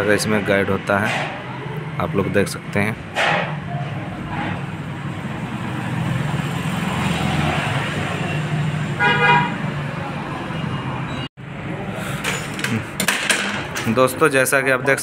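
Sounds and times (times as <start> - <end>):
road traffic passing: 0.0 - 15.0
vehicle horn: 8.2 - 9.7.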